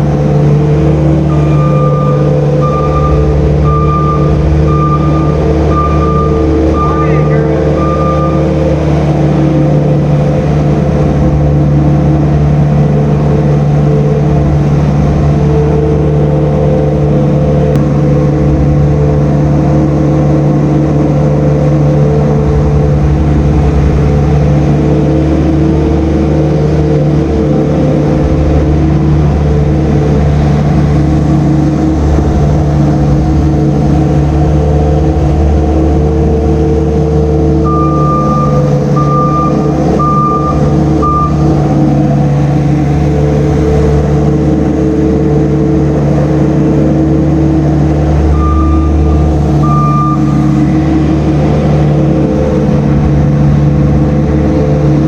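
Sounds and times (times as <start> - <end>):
farm machine engine running: 0.0 - 55.0
plow blade scraping: 0.0 - 55.0
reversing alarm beeping: 0.7 - 9.9, 37.0 - 42.7, 47.8 - 51.3.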